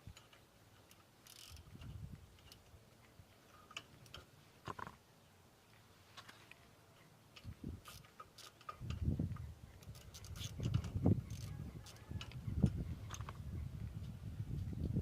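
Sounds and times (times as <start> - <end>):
metallic spanner clicks: 0.1 - 2.7, 9.8 - 12.4.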